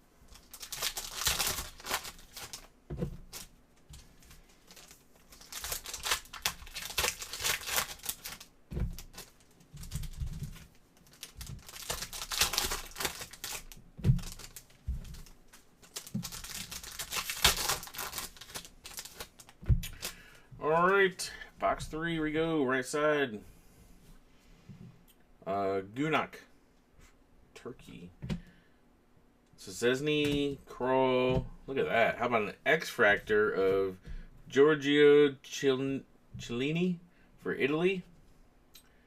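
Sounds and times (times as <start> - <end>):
plastic wrapping crinkling and tearing: 0.3 - 20.2.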